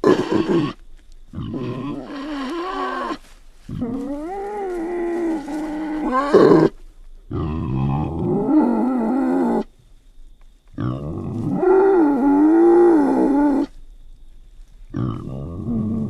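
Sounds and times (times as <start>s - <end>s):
wild boar calling: 0.0s - 9.7s, 14.9s - 16.0s.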